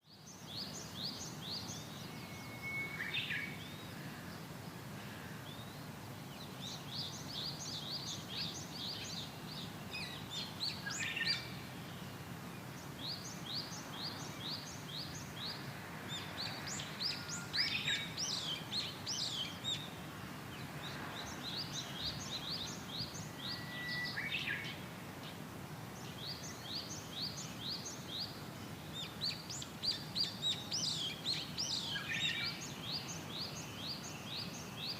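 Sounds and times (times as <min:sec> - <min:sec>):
birds chirping in trills: 0:06.6 - 0:24.9.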